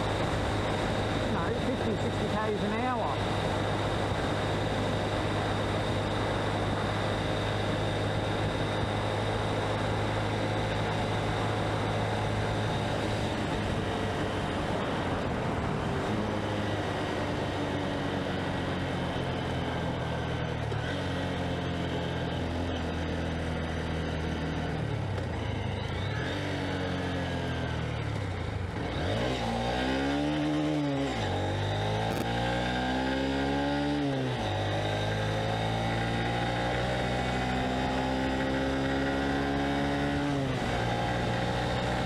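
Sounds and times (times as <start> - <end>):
motorcycle engine running: 0.0 - 42.0
wind rushing over microphone: 11.1 - 17.7.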